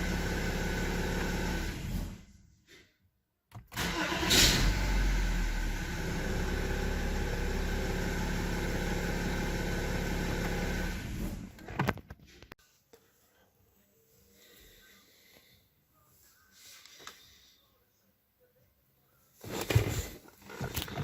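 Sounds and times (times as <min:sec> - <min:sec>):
car engine cranking and idling: 0:00.0 - 0:02.2, 0:03.7 - 0:11.7.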